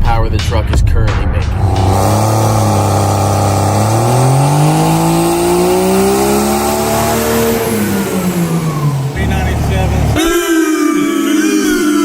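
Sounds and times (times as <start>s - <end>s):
truck engine at full throttle: 1.5s - 10.7s.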